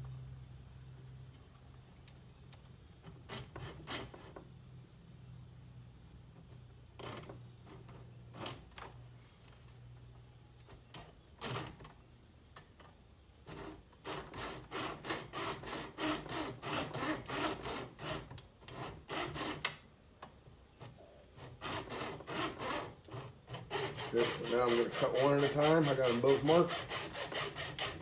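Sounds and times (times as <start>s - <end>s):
hacksaw cutting plastic: 13.5s - 19.8s, 21.4s - 28.0s.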